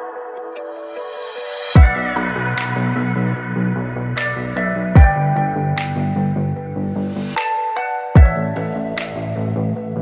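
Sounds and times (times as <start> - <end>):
pulsing bass line: 1.8 - 7.4.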